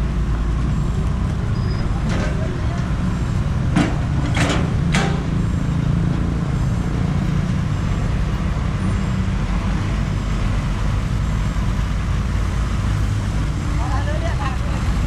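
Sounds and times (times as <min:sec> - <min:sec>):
diesel engine drone: 0:00.0 - 0:15.0.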